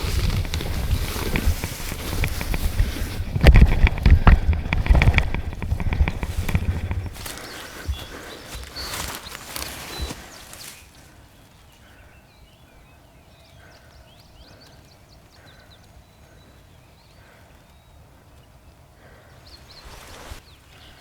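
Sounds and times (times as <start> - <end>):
rustling: 0.0 - 11.6, 19.6 - 21.0
songbirds chirping and singing: 0.0 - 21.0.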